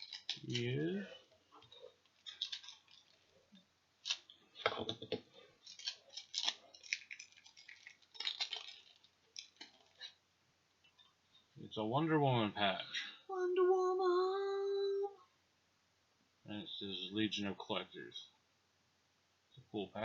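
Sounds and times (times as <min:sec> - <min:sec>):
plastic wrapper crinkling: 0:00.0 - 0:04.4, 0:05.6 - 0:10.2.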